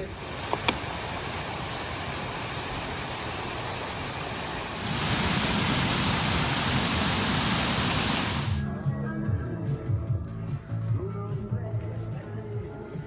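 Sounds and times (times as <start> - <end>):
steady rushing noise: 0.0 - 8.7.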